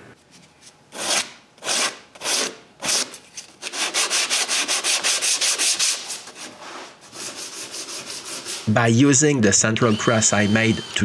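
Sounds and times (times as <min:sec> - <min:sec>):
sandpaper sanding wood: 0:01.0 - 0:08.8.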